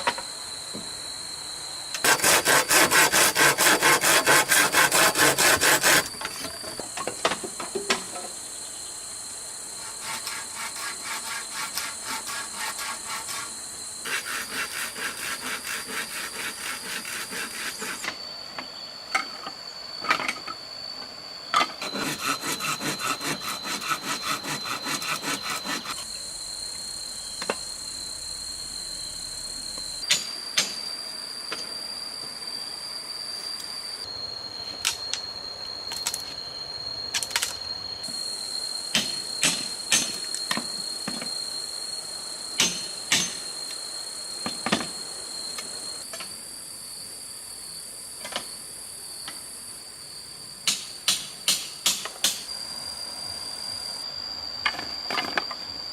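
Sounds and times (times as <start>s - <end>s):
hand saw cutting wood: 2.0s - 6.4s, 9.9s - 18.0s, 21.8s - 26.0s
steady high-pitched tone: 4.2s - 50.5s.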